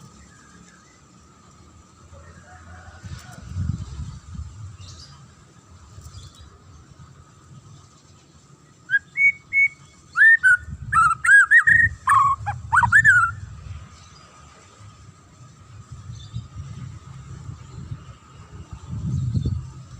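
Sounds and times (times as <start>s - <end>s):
songbird whistling: 8.9s - 13.4s.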